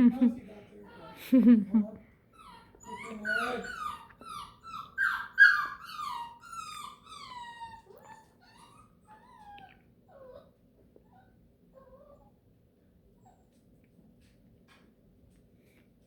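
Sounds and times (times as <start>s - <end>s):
puppy whining and yowling: 2.4s - 12.4s.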